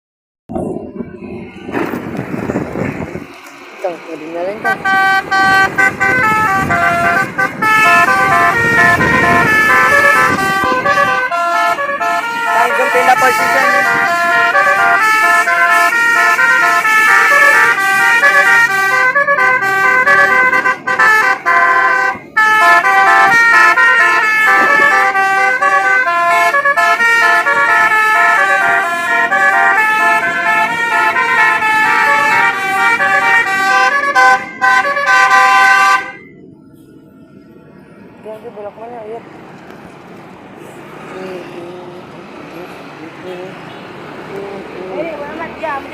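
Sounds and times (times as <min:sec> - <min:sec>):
musical bus horn tune: 0:04.6 - 0:36.3.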